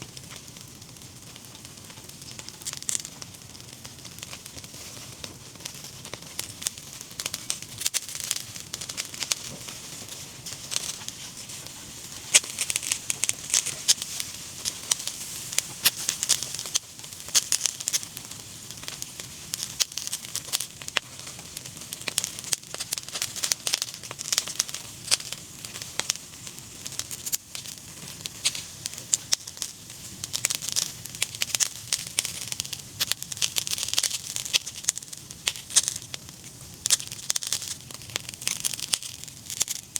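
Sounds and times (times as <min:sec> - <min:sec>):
meat sizzling over fire: 0:00.0 - 0:39.9.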